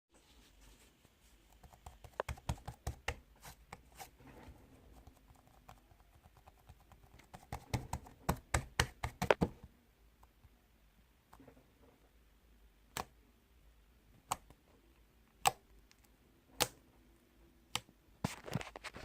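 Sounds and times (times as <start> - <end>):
sharp taps and clicks: 1.6 - 3.2, 5.1 - 9.6.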